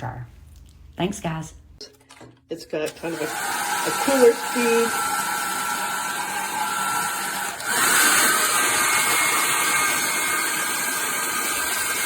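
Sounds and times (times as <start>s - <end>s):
hair dryer blowing: 2.9s - 12.0s.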